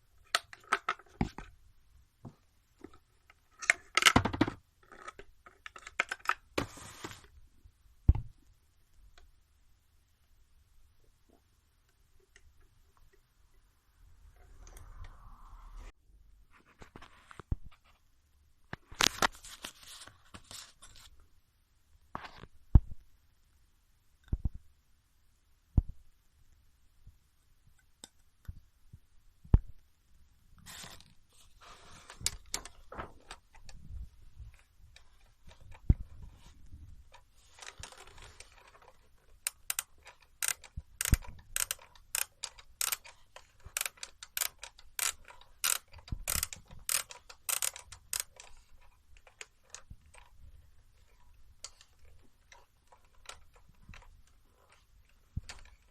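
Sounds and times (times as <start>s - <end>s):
clock mechanism clicking: 37.5s - 50.4s.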